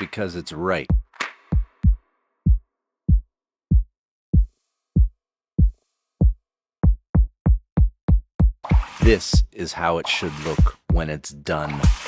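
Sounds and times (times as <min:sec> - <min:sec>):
electronic kick drum hits: 0:04.4 - 0:09.2.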